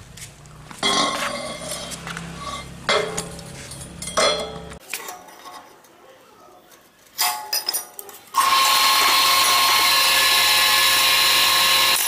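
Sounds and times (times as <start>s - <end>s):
metal strikes ringing: 2.5s - 4.8s.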